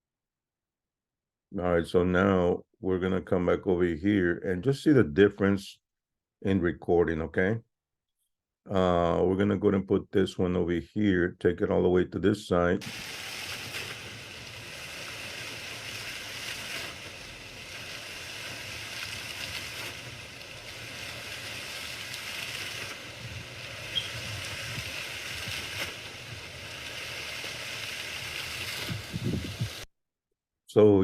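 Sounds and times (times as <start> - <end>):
steady rushing noise: 12.8 - 29.8.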